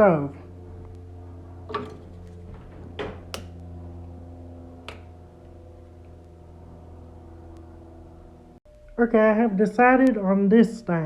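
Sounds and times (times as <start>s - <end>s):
steady low hum: 0.0s - 11.0s
stove ignition click: 3.3s - 3.7s, 4.8s - 5.2s.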